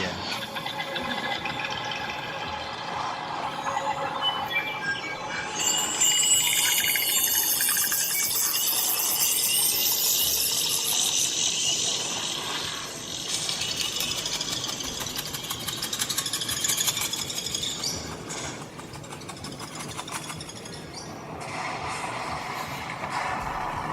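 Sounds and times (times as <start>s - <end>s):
shimmering scraping sound effects: 0.0s - 18.6s.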